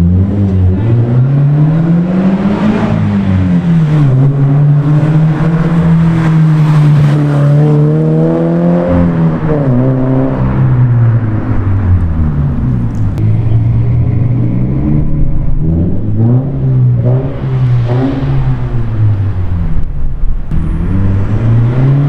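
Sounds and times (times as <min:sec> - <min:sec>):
car engine exhaust note: 0:07.3 - 0:22.0.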